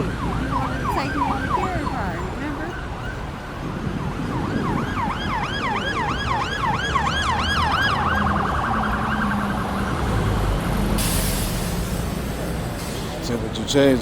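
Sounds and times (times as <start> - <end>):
emergency vehicle siren: 0.0 - 11.1.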